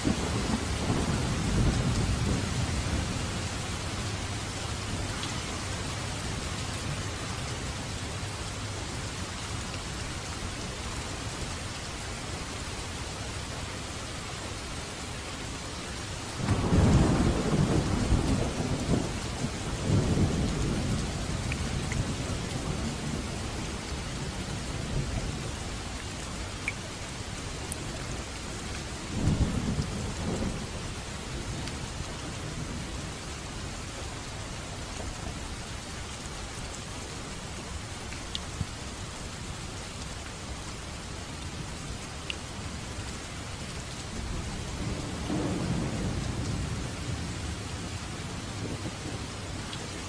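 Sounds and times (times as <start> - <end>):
thunder rumbling: 0.0 - 7.0, 16.4 - 25.6, 29.1 - 33.7, 44.1 - 49.7
steady rain hissing: 0.0 - 50.0.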